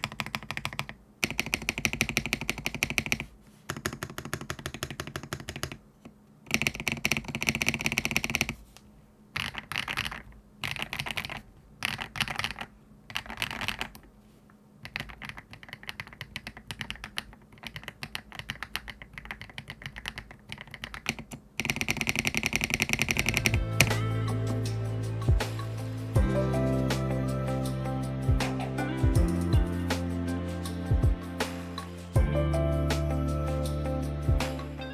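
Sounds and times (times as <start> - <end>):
mechanical keyboard typing: 0.0 - 5.8, 6.5 - 8.6, 9.4 - 14.1, 14.8 - 24.1.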